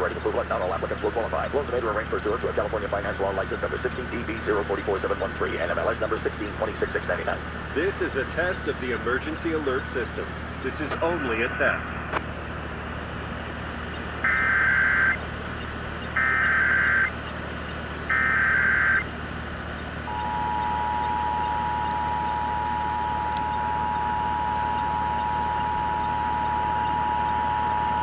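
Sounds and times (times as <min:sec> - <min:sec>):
low steady hum: 0:00.0 - 0:28.0
data-tone bursts: 0:14.3 - 0:15.2, 0:16.2 - 0:17.1, 0:18.1 - 0:19.0, 0:20.1 - 0:28.0
two-tone attention signal: 0:14.3 - 0:15.2, 0:16.2 - 0:17.1, 0:18.1 - 0:19.0, 0:20.1 - 0:28.0.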